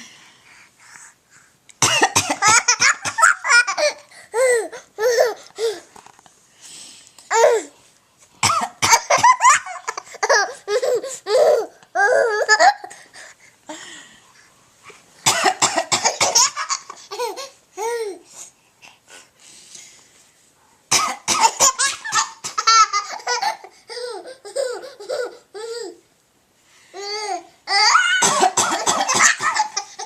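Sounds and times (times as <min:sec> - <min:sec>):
person coughing: 0:01.8 - 0:03.3, 0:15.3 - 0:16.6, 0:20.9 - 0:22.7, 0:28.2 - 0:29.8
baby laughing: 0:02.4 - 0:05.8, 0:08.9 - 0:13.0, 0:21.4 - 0:26.0, 0:29.1 - 0:30.0.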